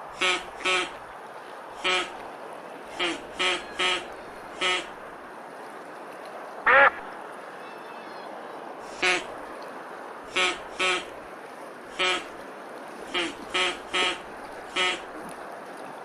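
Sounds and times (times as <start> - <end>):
duck quacking: 0.2 - 1.0, 1.8 - 2.1, 2.9 - 4.9, 6.7 - 7.0, 8.9 - 9.3, 10.3 - 11.1, 11.9 - 12.3, 13.1 - 15.0.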